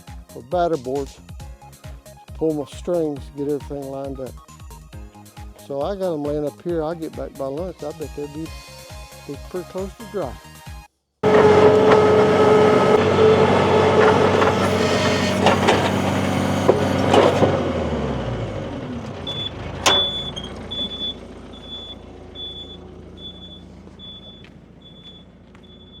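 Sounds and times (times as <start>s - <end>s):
engine running and winding down: 11.2s - 26.0s
high electronic beeps: 19.3s - 26.0s.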